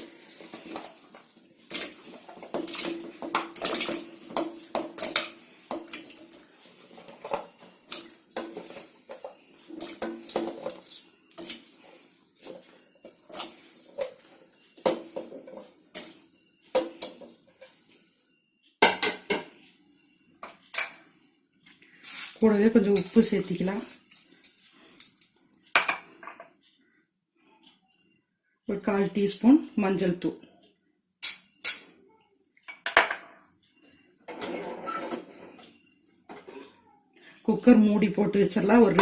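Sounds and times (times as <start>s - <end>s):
food clattering into a metal pot: 1.7s - 6.3s, 7.0s - 11.6s.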